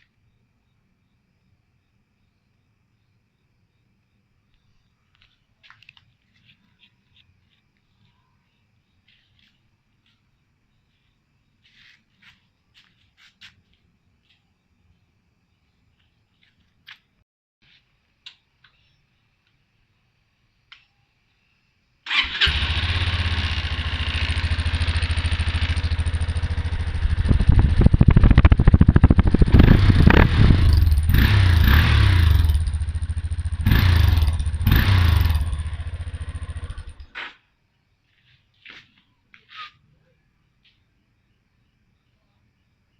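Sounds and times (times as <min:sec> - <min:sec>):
motorcycle engine running: 0:22.1 - 0:37.1.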